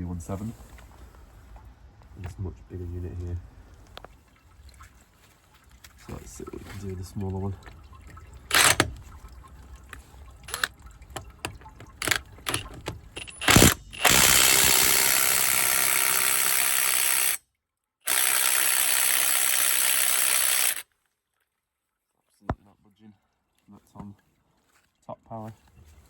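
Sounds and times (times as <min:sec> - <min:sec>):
impact wrench hammering: 0:08.5 - 0:09.0, 0:10.5 - 0:11.3, 0:12.0 - 0:17.4
knocks and clicks: 0:08.5 - 0:09.1, 0:10.5 - 0:15.8.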